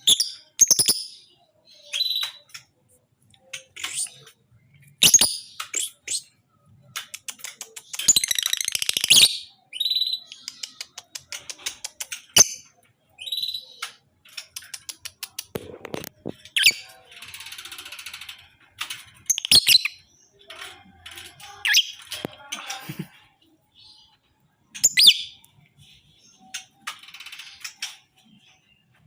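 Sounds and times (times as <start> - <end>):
bird buzzy chatter: 0.0 - 29.0
lovebird chirping and squawking: 3.6 - 4.4, 5.0 - 6.4, 7.5 - 13.8, 16.5 - 17.0, 19.3 - 20.1, 24.8 - 25.5.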